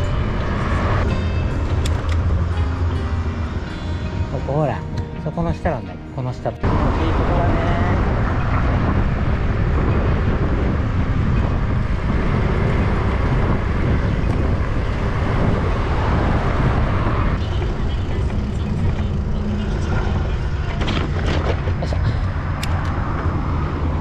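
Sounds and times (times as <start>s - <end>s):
wind rush while cycling: 6.6s - 24.0s
bicycle rolling noise: 8.0s - 24.0s.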